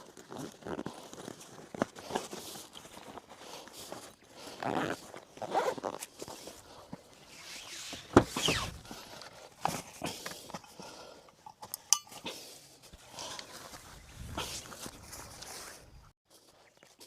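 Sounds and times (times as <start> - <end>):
rustling: 12.8 - 16.5.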